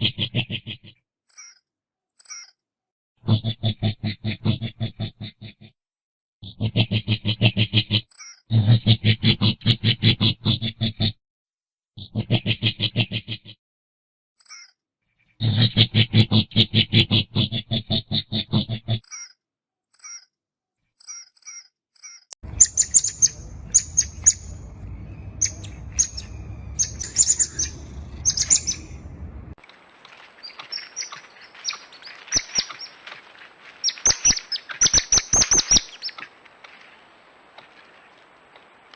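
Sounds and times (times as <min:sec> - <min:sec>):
low rumble: 0:22.4 - 0:29.6
coatis chirping and squeaking: 0:22.5 - 0:29.6.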